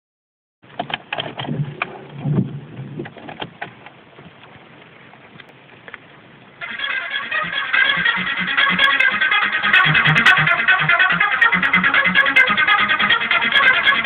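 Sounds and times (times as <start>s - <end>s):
music from car stereo: 6.6s - 14.0s.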